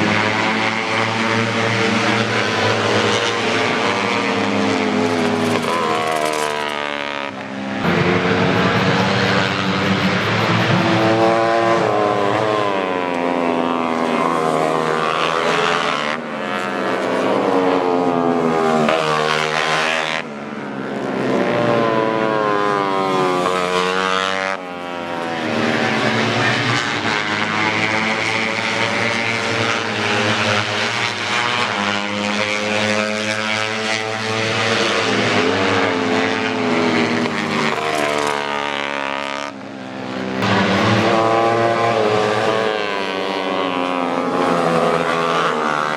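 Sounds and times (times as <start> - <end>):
motorcycle engines revving: 7.8 - 12.9, 40.4 - 43.9.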